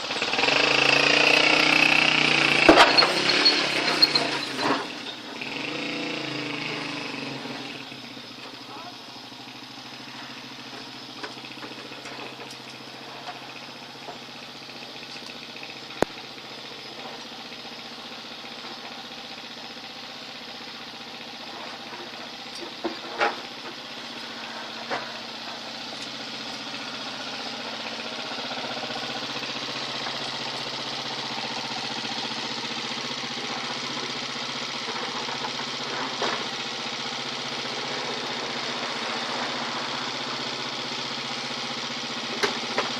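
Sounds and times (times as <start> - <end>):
motorcycle engine running: 0.0 - 42.9
sharp clicks and knocks: 1.2 - 4.8.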